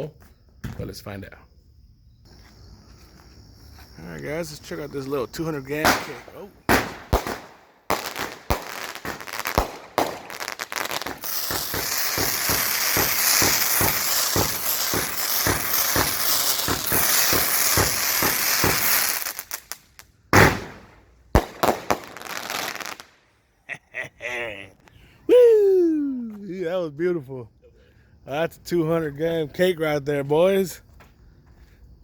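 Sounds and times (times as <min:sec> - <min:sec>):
high firework hiss: 0:03.8 - 0:23.2
loud firework report: 0:03.9 - 0:23.2
firework cake shots: 0:05.7 - 0:23.1.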